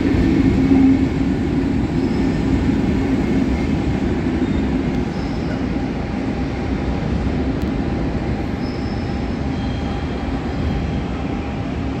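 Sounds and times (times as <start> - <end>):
train wheels rumbling on rails: 0.0 - 12.0
faint high squeals: 8.5 - 11.3.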